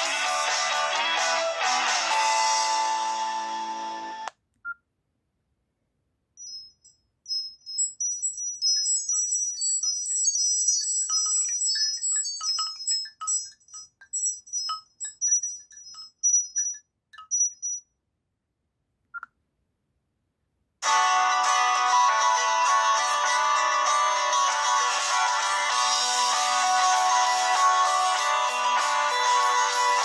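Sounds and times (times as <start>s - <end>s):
phone ringtone melody: 2.1s - 4.3s, 6.4s - 17.8s, 20.8s - 30.0s
phone ringtone with high notes: 2.1s - 4.3s, 6.4s - 17.9s, 20.8s - 30.0s.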